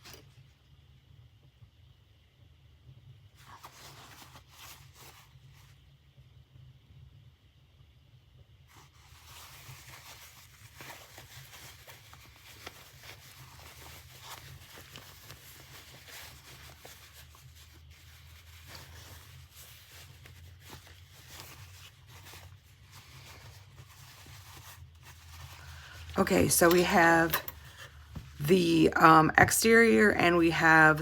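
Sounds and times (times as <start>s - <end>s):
fabric rustling: 8.7s - 31.0s.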